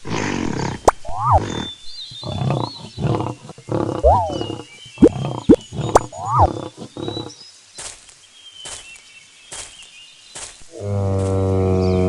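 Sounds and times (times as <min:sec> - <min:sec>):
tiger growling: 0:00.0 - 0:07.4.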